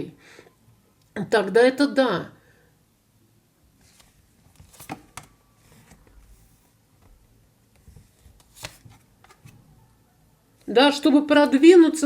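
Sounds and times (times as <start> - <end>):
cards rustling: 3.8 - 6.7, 7.8 - 9.6
card snaps: 8.4 - 9.5.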